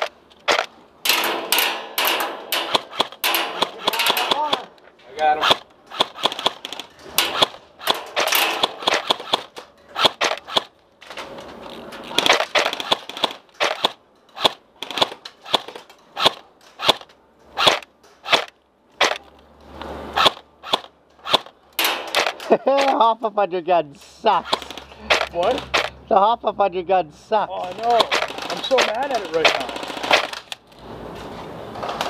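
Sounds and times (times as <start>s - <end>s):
airsoft guns firing: 0.0s - 4.7s, 5.4s - 10.7s, 27.6s - 30.5s.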